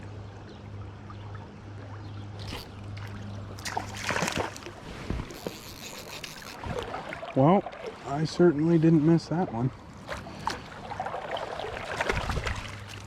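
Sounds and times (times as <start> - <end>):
water splashing: 2.3 - 8.9, 9.8 - 13.0.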